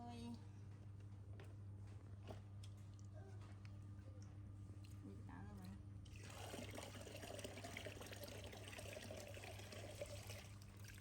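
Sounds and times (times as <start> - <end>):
water pouring in thin stream: 6.2 - 11.0.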